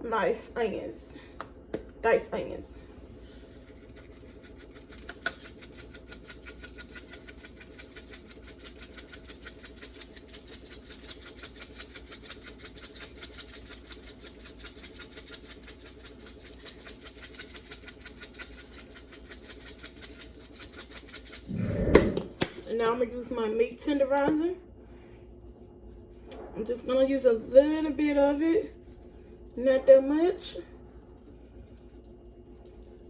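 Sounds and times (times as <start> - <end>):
spice shaker rattling: 3.2 - 21.5.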